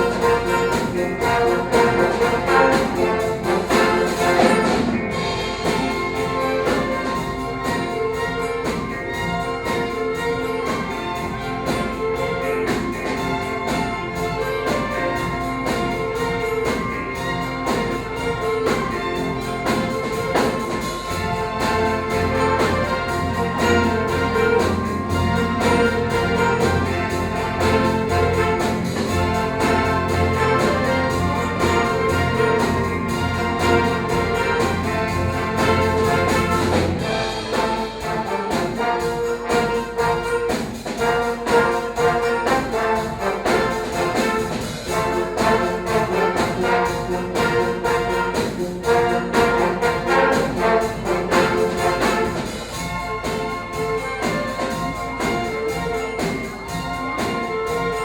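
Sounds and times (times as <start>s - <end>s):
low bass line: 0.0s - 40.2s
orchestral brass music: 0.0s - 58.0s.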